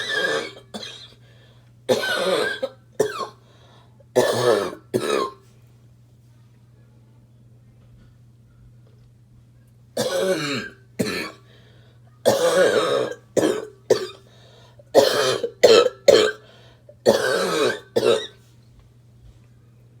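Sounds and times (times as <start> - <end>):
harsh barking cough: 15.0 - 16.4.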